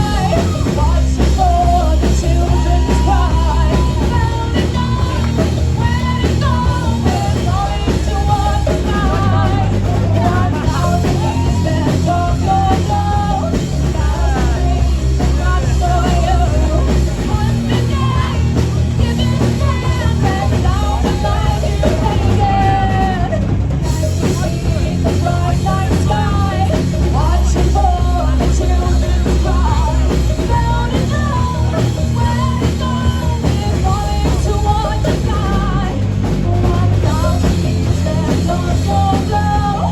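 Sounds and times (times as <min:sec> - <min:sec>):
bass: 0:00.0 - 0:39.9
drum kit: 0:00.0 - 0:39.9
guitar: 0:00.0 - 0:39.9
person singing: 0:00.0 - 0:39.9.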